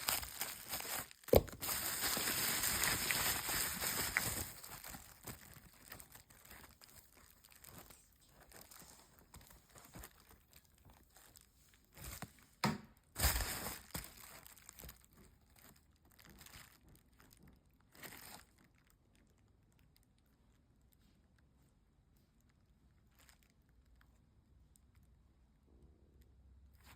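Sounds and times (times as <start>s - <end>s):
packaging crinkling and tearing: 0.0s - 12.3s, 13.2s - 19.4s.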